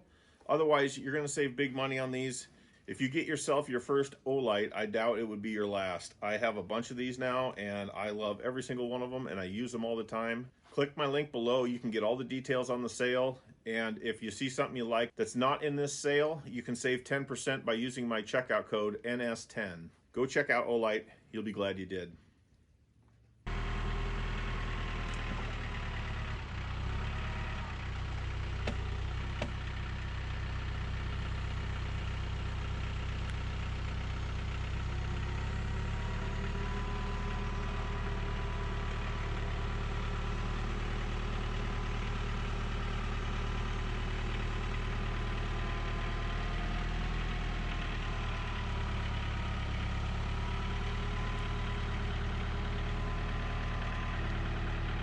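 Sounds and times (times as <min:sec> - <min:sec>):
engine running steadily: 0:23.5 - 0:55.0.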